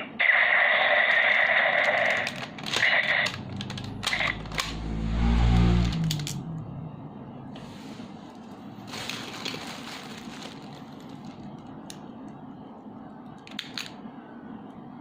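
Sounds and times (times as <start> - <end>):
sharp plastic clicks: 1.1 - 4.8.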